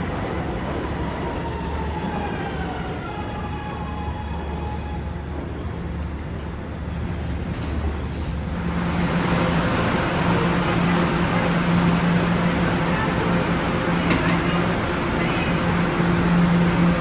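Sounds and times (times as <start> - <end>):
subway train wheel noise: 0.0 - 17.0
low motor hum: 8.5 - 17.0.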